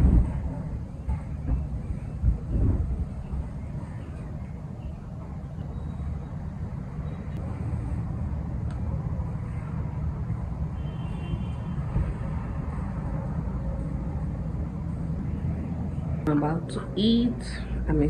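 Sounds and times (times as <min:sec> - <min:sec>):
low vehicle rumble: 0:00.0 - 0:18.0.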